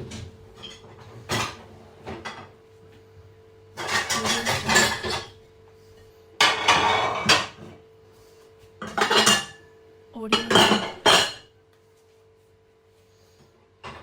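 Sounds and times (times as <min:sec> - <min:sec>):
dishes and cutlery clattering: 0:00.6 - 0:02.5, 0:03.8 - 0:05.4, 0:06.4 - 0:07.7, 0:08.8 - 0:09.7, 0:10.3 - 0:11.5
dishes knocking: 0:03.8 - 0:05.3, 0:10.3 - 0:11.4.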